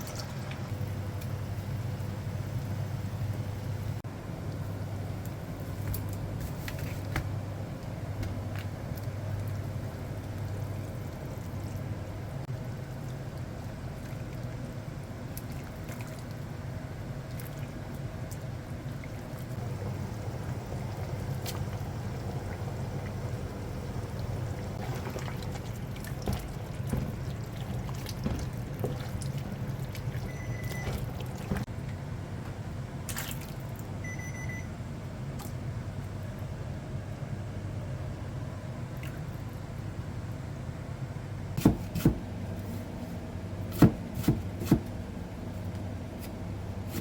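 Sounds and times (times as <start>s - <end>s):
short high beeps: 34.0s - 34.7s.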